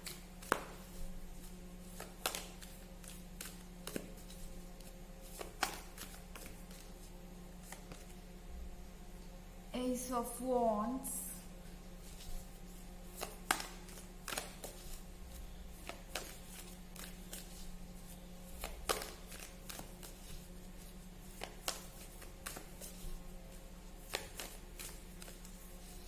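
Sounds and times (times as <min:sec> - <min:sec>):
cards being shuffled: 0:00.0 - 0:08.2, 0:12.0 - 0:26.0
low steady hum: 0:00.0 - 0:26.0.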